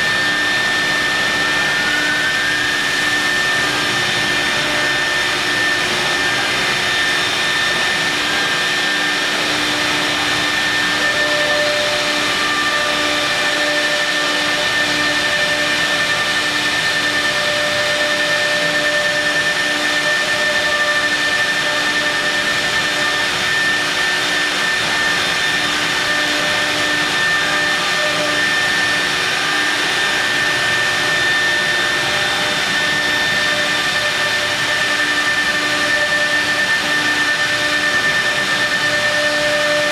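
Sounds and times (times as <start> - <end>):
milling spindle whine: 0.0 - 39.9
stone cutting noise: 0.0 - 39.9.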